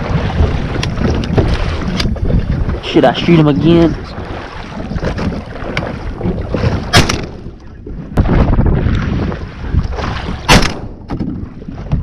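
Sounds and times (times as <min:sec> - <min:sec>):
water slapping boat: 0:00.0 - 0:12.0
wind buffeting microphone: 0:00.0 - 0:12.0
shotgun shots: 0:06.9 - 0:07.4, 0:10.5 - 0:11.0.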